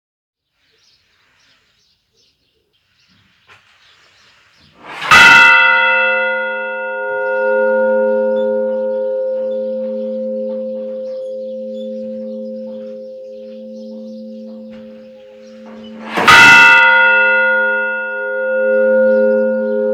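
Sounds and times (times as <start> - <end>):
church bell ringing: 4.8 - 19.9.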